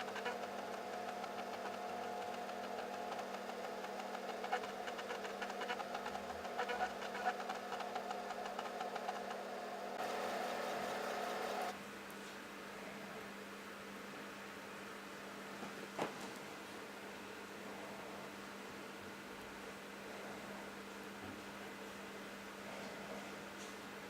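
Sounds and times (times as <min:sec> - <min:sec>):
floppy drive motor running: 0:00.0 - 0:11.8.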